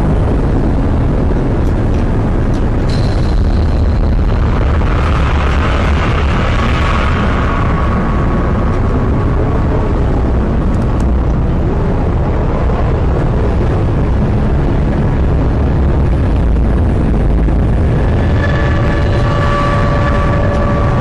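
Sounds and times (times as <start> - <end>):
low rumbling noise: 0.0 - 21.0.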